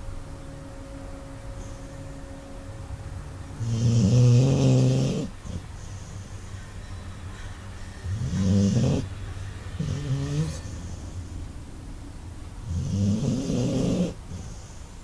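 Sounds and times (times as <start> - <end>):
quiet breathing: 1.5 - 2.6, 5.2 - 12.0, 14.1 - 15.0
loud long snore: 3.6 - 6.4, 8.0 - 9.1, 9.8 - 11.2, 12.6 - 14.8.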